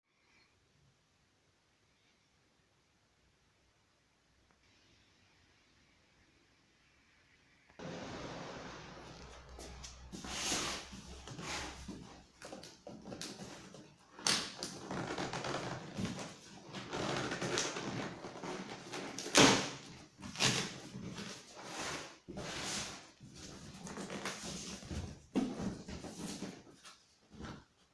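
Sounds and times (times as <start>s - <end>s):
cardboard packaging rustling: 7.8s - 27.8s.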